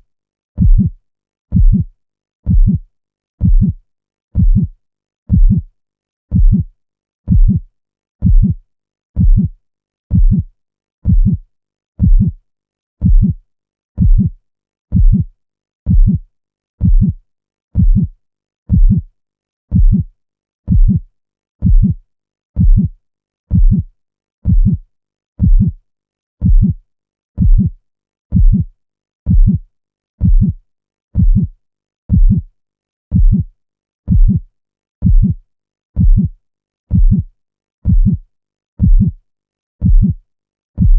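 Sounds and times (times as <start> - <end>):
heartbeat thumps: 0.6 - 0.9, 1.5 - 1.9, 2.5 - 2.8, 3.4 - 3.8, 4.4 - 4.7, 5.3 - 5.7, 6.3 - 6.7, 7.3 - 7.6, 8.2 - 8.6, 9.2 - 9.5, 10.1 - 11.4, 12.0 - 12.4, 13.0 - 13.4, 14.0 - 14.3, 14.9 - 15.3, 15.9 - 16.2, 16.8 - 17.2, 17.8 - 18.1, 18.7 - 19.0, 19.7 - 20.1, 20.7 - 21.0, 21.6 - 22.0, 22.6 - 22.9, 23.5 - 23.8, 24.4 - 24.8, 25.4 - 25.8, 26.4 - 26.8, 27.4 - 27.7, 28.3 - 28.7, 29.3 - 29.6, 30.2 - 30.6, 31.2 - 31.5, 32.1 - 32.4, 33.1 - 33.5, 34.1 - 34.4, 35.0 - 35.4, 36.0 - 36.3, 36.9 - 38.2, 38.8 - 39.2, 39.8 - 40.2.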